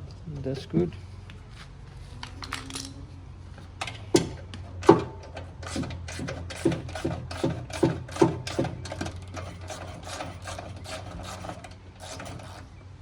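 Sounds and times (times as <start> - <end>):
tools and metal parts clicking: 2.4 - 3.0, 3.8 - 12.7.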